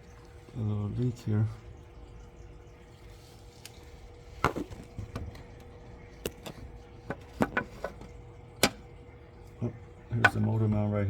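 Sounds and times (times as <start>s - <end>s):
faint steady hum: 0.0s - 11.0s
sharp clicks and knocks: 4.4s - 8.9s.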